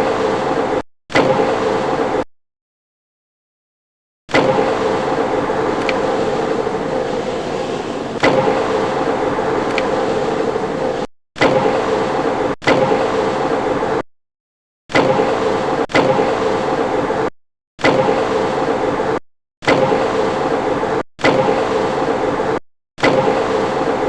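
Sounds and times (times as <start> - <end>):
faint clicks: 5.8 - 6.0, 9.7 - 9.9.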